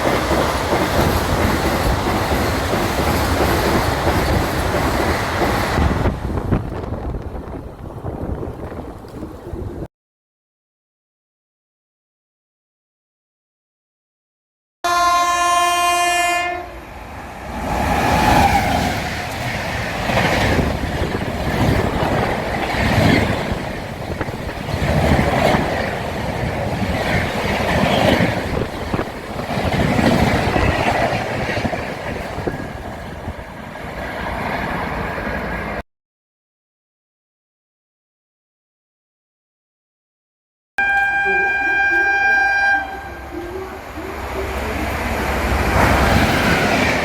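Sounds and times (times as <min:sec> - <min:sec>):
running train noise: 0:00.0 - 0:09.9, 0:14.9 - 0:35.8, 0:40.8 - 0:47.0
train horn blast: 0:14.8 - 0:16.8, 0:40.8 - 0:44.6.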